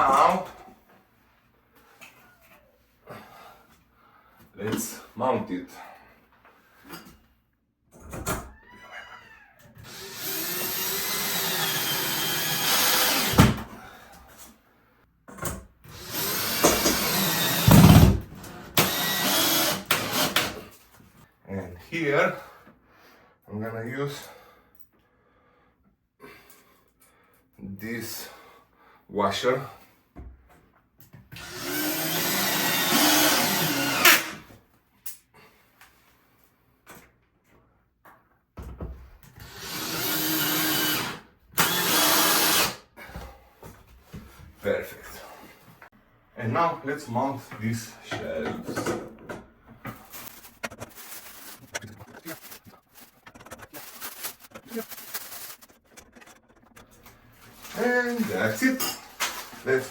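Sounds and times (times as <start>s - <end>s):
power drill driving screws: 9.8s - 13.6s, 15.9s - 20.6s, 31.4s - 34.4s, 39.4s - 42.8s.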